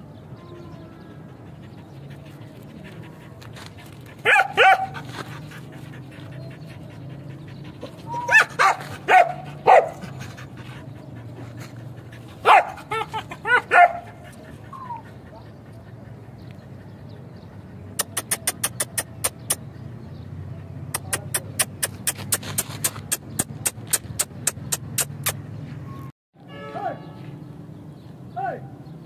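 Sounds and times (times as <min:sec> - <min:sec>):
dog barking: 0:04.2 - 0:05.0, 0:08.2 - 0:10.0, 0:12.4 - 0:14.1.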